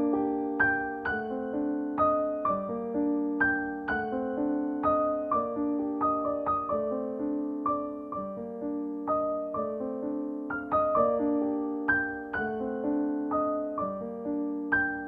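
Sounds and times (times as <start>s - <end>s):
gentle piano music: 0.0s - 15.0s.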